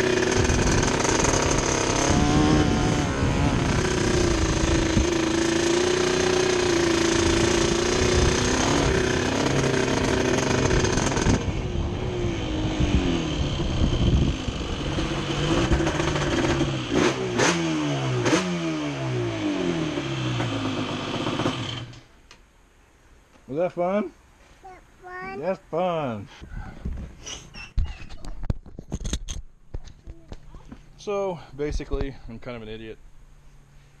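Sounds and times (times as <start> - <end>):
two-stroke engine revving: 0.0 - 22.0.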